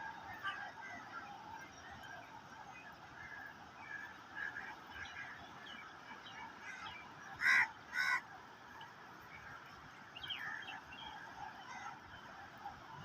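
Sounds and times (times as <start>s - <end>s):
loud honking bird calls: 6.6s - 8.3s.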